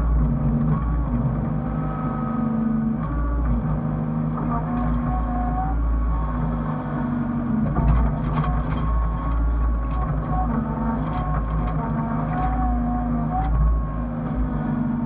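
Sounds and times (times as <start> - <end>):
diesel engine droning: 0.0 - 15.0
hydraulic whine: 0.0 - 15.0.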